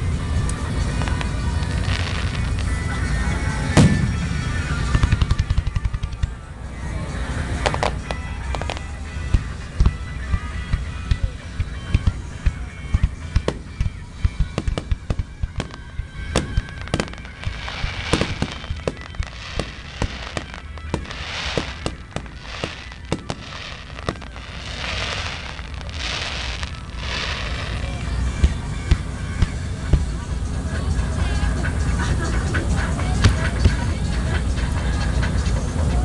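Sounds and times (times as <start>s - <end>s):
fireworks crackling: 0.0s - 36.0s
fireworks bangs: 0.8s - 6.5s, 7.6s - 30.3s.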